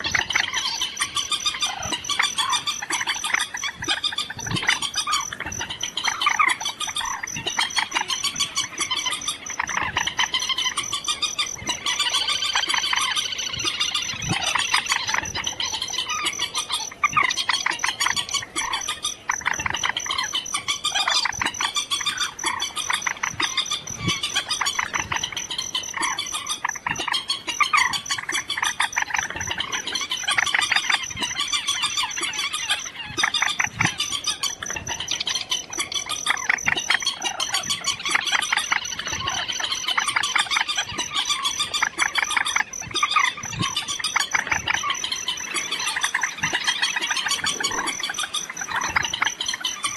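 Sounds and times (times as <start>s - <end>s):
recorded bird chattering calls: 0.0s - 49.9s
steady high-pitched tone: 0.0s - 49.9s.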